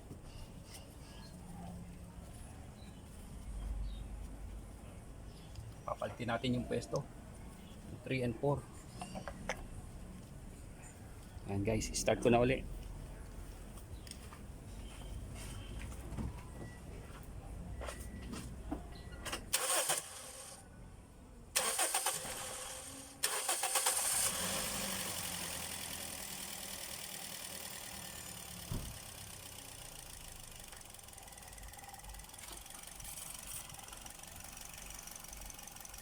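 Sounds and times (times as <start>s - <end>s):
starter cranking engine: 19.5s - 20.6s, 21.6s - 36.0s
engine rough idle: 24.3s - 36.0s.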